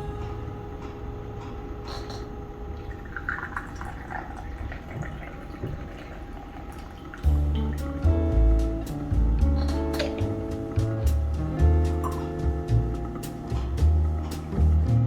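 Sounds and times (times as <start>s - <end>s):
tea pouring: 2.8s - 7.3s
background music: 7.2s - 15.0s.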